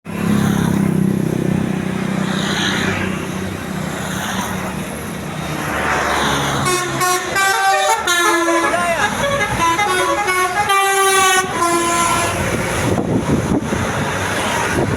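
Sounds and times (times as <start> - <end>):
road noise: 0.0 - 14.9
bus engine running: 0.1 - 14.9
multi-tone horn playing notes: 6.6 - 12.5.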